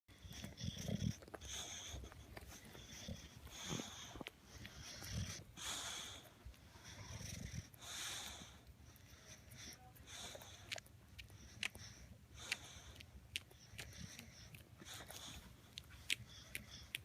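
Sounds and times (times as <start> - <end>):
dog grunting: 0.1 - 6.3, 6.9 - 8.6
dog snorting and wheezing: 0.1 - 17.0.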